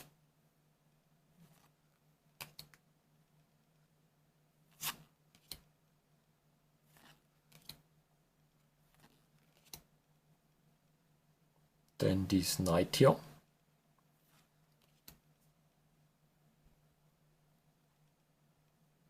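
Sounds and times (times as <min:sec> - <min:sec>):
faint low hum: 0:00.0 - 0:19.0
trading cards rustling: 0:08.9 - 0:09.9.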